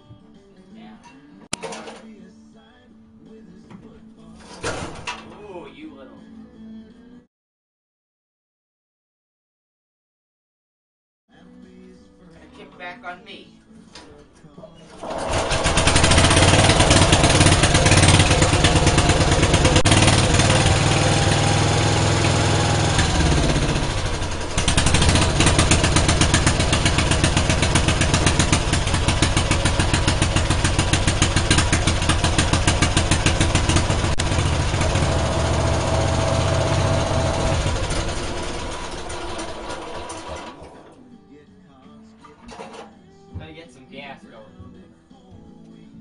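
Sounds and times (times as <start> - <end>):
small engine running: 15.0 - 40.8.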